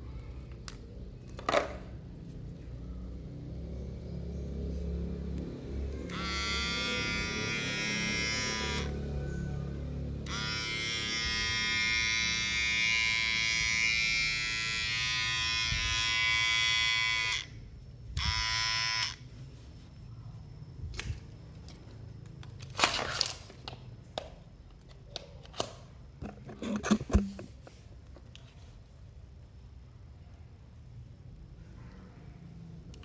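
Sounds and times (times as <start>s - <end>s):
electric hair clipper buzzing: 5.8s - 9.6s, 10.2s - 17.6s, 18.2s - 19.2s.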